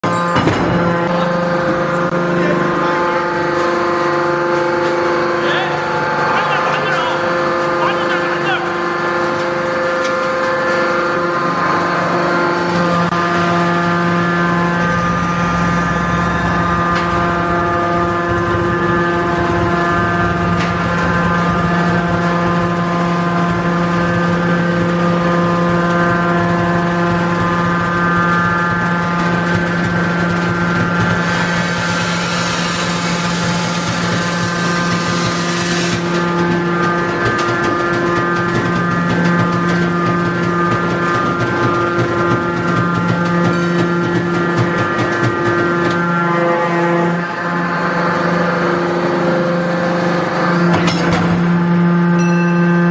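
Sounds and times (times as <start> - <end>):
hydraulic pump motor humming: 0.0 - 52.2
hiss: 31.3 - 36.0.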